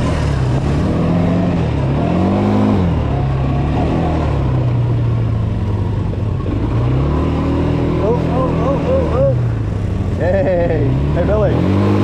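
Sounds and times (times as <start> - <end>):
quad bike engine: 0.0 - 12.0.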